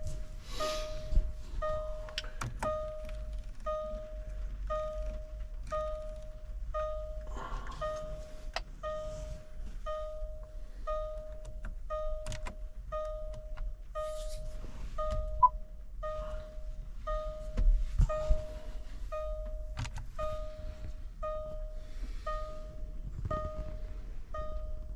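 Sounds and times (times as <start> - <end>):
car warning chime bonging: 0.0 - 24.9.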